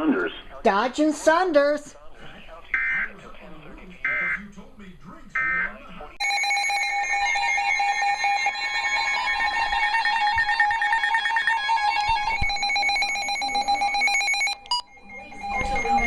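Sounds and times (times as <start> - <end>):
two-tone alarm signal: 5.4 - 16.0.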